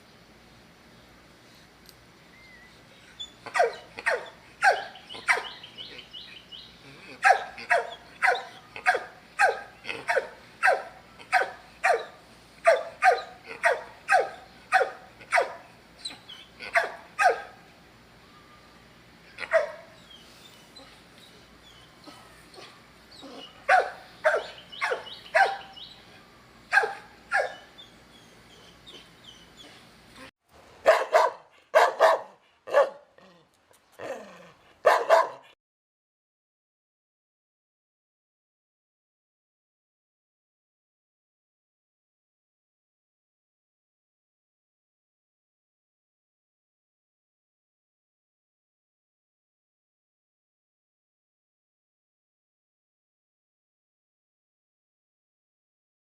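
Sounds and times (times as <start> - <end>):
dog barking: 3.5 - 5.6, 7.2 - 15.7, 16.7 - 17.6, 19.4 - 19.9, 23.7 - 25.7, 26.7 - 27.7, 30.8 - 33.1, 34.8 - 35.6.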